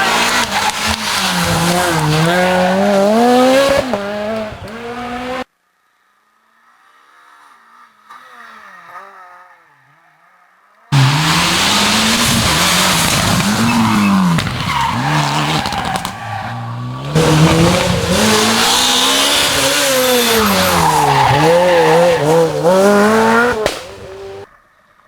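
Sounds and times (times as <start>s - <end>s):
rally car engine revving: 0.0s - 5.5s, 10.9s - 24.5s.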